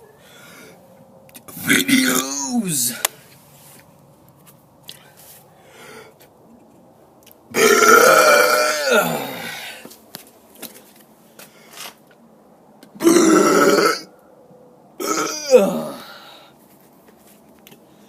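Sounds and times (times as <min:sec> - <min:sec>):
man burping: 0:07.5 - 0:09.8, 0:13.0 - 0:14.1, 0:15.0 - 0:16.3.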